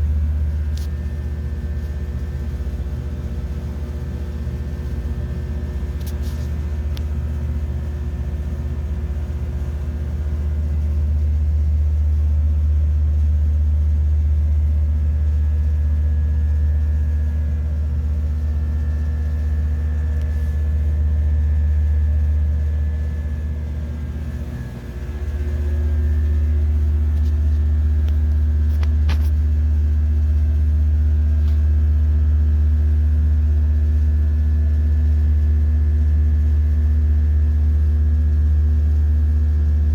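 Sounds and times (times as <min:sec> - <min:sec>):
constant humming tones: 0:00.0 - 0:39.9
machinery rumbling: 0:19.8 - 0:29.6.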